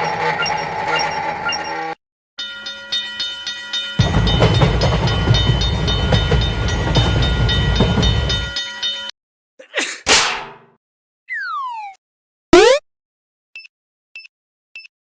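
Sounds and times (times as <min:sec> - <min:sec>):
level crossing warning bell: 0:00.0 - 0:09.1
train rumbling past: 0:04.0 - 0:08.6.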